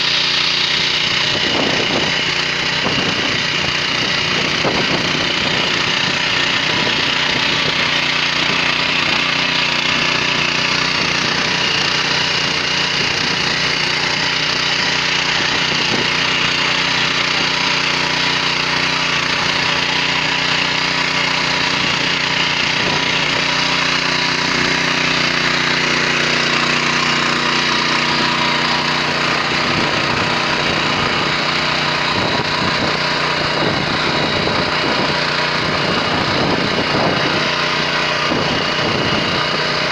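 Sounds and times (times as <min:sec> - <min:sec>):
rotary tiller cutting soil: 0:00.0 - 0:39.9
walk-behind tractor engine: 0:00.0 - 0:39.9.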